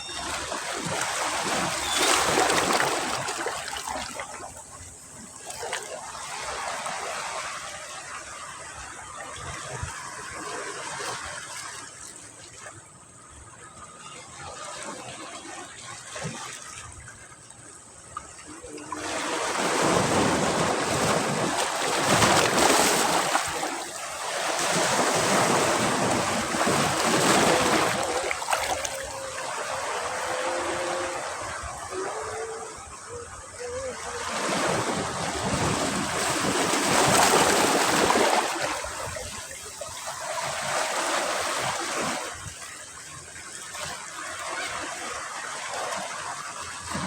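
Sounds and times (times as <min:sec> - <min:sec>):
surf breaking: 0:19.0 - 0:33.1.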